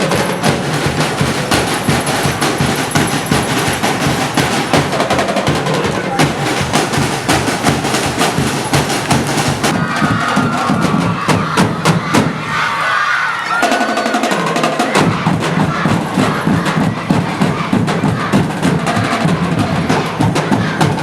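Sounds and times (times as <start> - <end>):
loud percussion music: 0.0 - 21.0.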